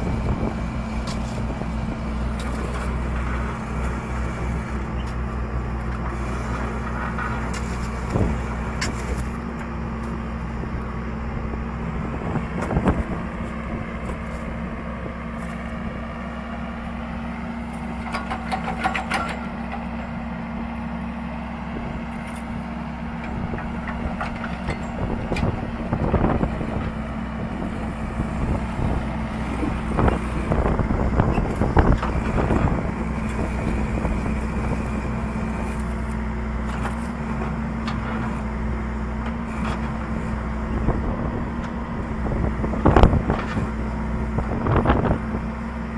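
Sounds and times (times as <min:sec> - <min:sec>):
heavy machine engine running: 0:00.0 - 0:45.9.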